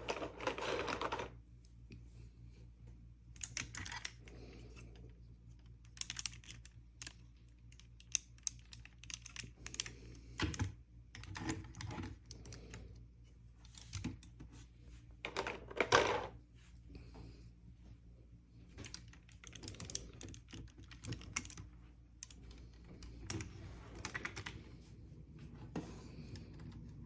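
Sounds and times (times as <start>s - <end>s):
small plastic clicks: 5.6s - 12.8s.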